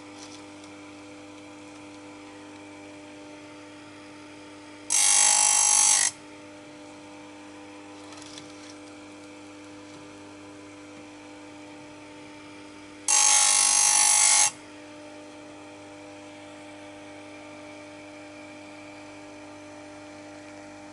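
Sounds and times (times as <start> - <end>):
chain grinder motor humming: 0.0 - 0.8, 4.9 - 6.2, 8.0 - 9.0, 13.1 - 14.6.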